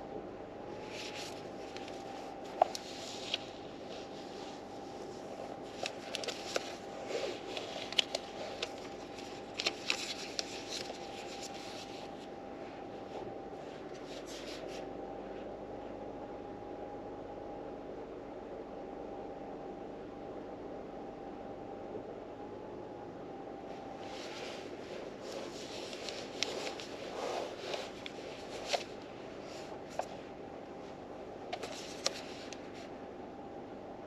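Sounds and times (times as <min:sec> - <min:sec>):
faint hum: 0:00.0 - 0:34.0
book pages rustling: 0:00.8 - 0:14.9, 0:24.0 - 0:32.9.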